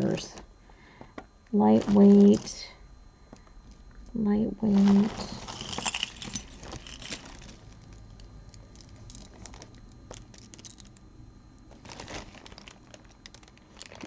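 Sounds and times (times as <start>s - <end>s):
jewelry clinking and rattling: 4.8s - 11.0s.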